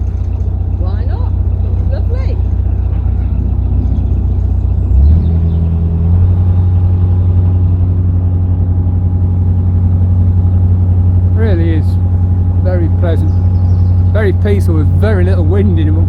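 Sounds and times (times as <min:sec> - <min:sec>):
boat engine humming: 0:00.0 - 0:16.0.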